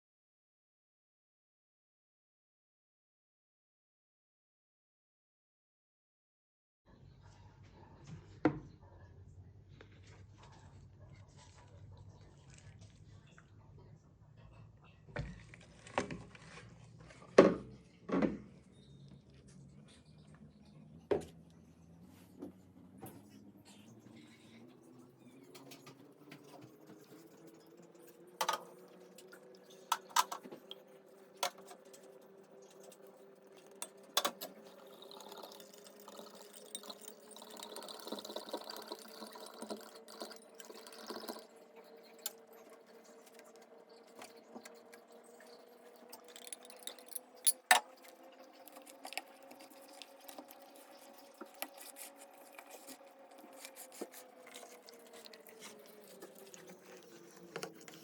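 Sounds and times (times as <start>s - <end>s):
liquid pouring or mixing: 24.5s - 58.0s
utensils clicking and knocking: 25.6s - 58.0s.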